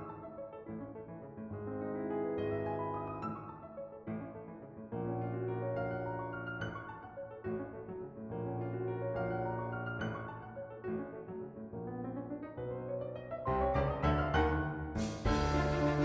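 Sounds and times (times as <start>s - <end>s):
piano music: 0.0s - 16.0s.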